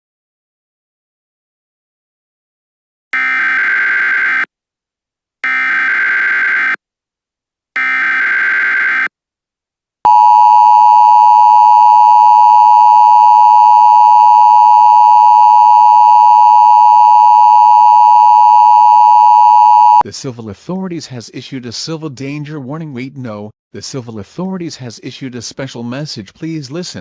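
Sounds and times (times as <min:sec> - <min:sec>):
digital data tone bursts: 0:10.1 - 0:20.0
two-tone attention signal: 0:10.1 - 0:20.0.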